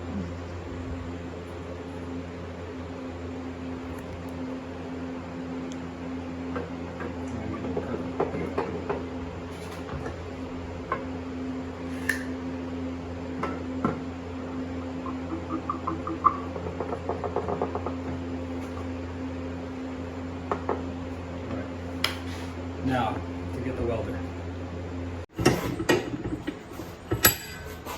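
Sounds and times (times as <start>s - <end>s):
electrical hum: 0.0s - 27.9s.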